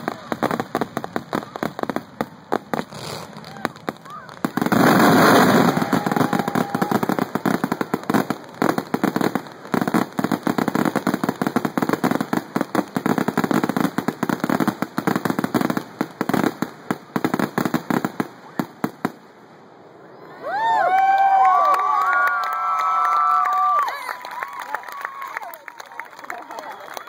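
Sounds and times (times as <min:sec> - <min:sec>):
fireworks bangs and crackles: 0:00.0 - 0:19.6.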